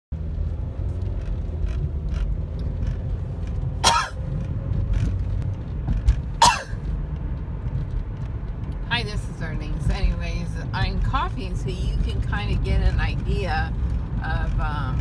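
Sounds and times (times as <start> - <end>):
steady low rumble: 0.1 - 15.0
woman coughing: 3.8 - 4.2, 6.4 - 6.8.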